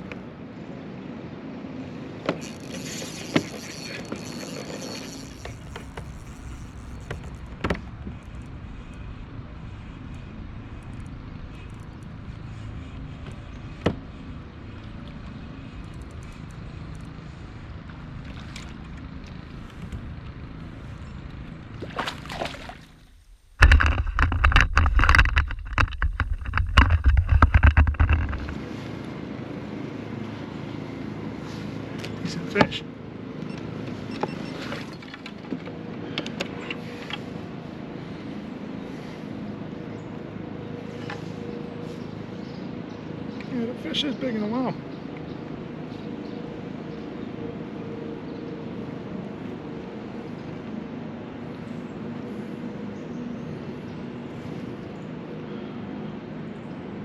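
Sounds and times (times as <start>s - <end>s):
water noise: 2.2s - 28.9s
rough rumble and crackle: 2.4s - 29.1s
knocks against boat: 23.6s - 28.6s.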